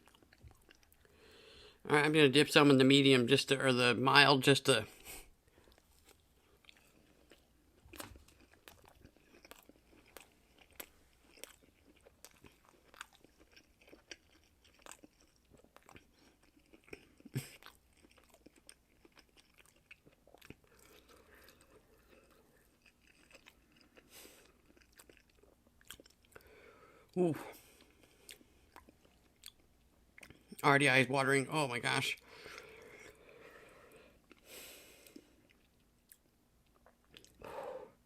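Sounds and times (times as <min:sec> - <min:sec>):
chewing with soft crunches: 0:00.0 - 0:01.8, 0:05.0 - 0:30.6, 0:32.2 - 0:37.6.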